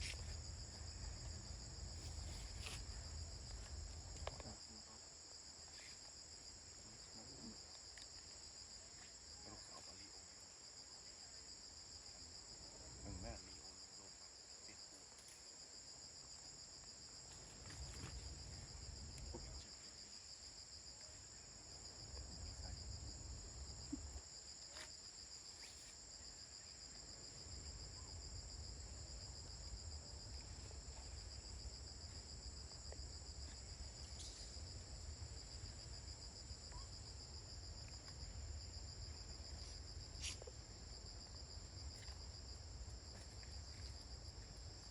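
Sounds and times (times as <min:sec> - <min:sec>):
insects chirring: 0:00.0 - 0:44.9.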